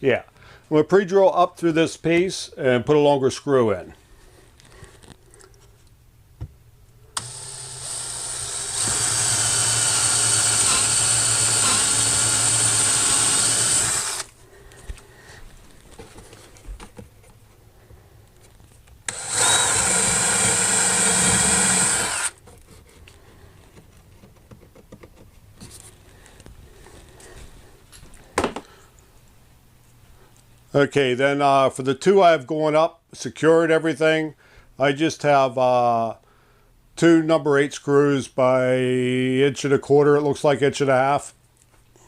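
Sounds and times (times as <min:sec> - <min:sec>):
power drill boring wood: 0:07.2 - 0:14.3, 0:19.1 - 0:22.4
quiet handling: 0:22.4 - 0:30.7.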